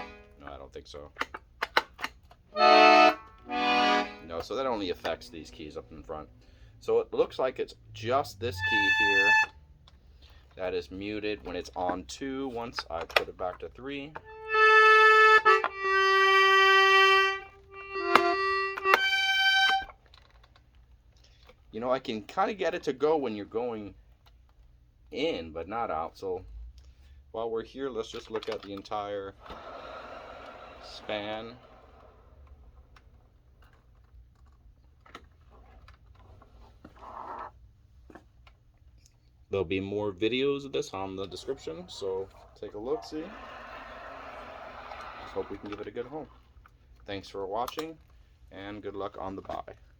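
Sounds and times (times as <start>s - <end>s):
accordion held notes: 0.0s - 0.6s, 2.5s - 5.6s, 8.3s - 9.6s, 14.2s - 19.9s
accordion key click: 14.3s - 19.9s.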